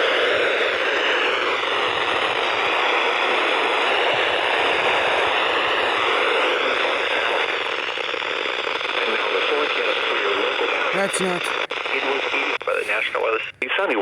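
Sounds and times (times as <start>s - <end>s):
radio static hissing: 10.9s - 13.7s.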